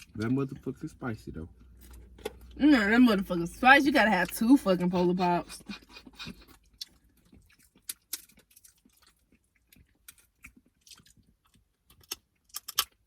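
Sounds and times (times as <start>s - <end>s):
person chewing and biting: 5.6s - 13.0s
shell crunches and clicks: 9.7s - 13.0s.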